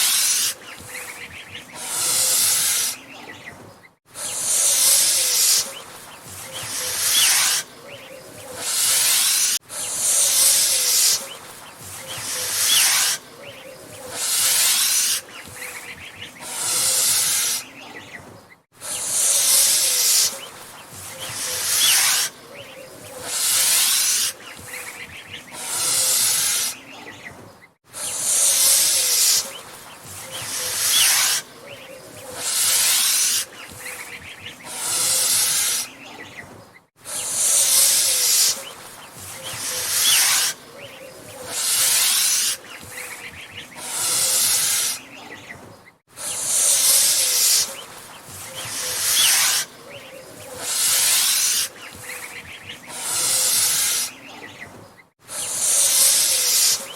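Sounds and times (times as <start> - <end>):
goose hissing: 0.0 - 3.2, 4.1 - 17.9, 18.8 - 27.0, 27.9 - 36.0, 37.0 - 45.2, 46.1 - 54.4, 55.2 - 56.9.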